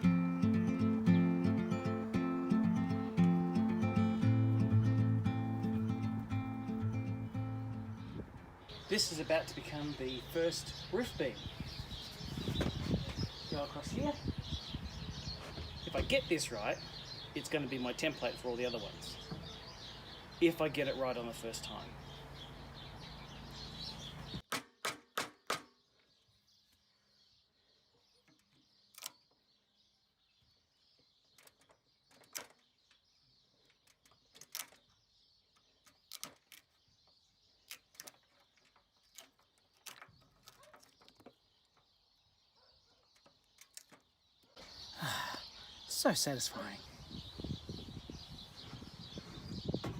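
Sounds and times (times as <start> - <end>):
sharp knocks on timber beam: 24.5 - 25.8.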